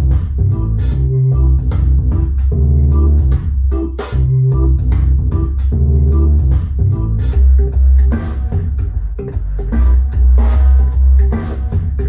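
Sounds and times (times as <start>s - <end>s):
band music through speakers: 0.0s - 12.0s.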